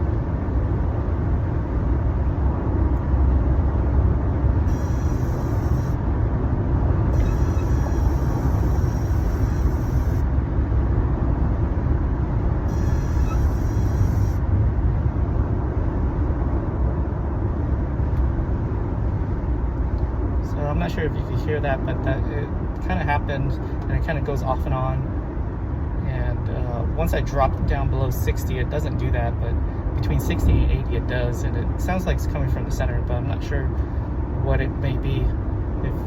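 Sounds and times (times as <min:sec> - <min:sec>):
road and engine drone in car cabin: 0:00.0 - 0:36.0
thin high-pitched squeak: 0:07.1 - 0:10.2, 0:12.7 - 0:14.4.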